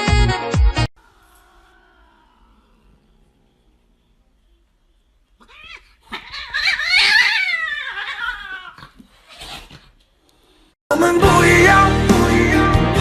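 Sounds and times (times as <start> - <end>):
cat yowling: 5.4 - 9.7.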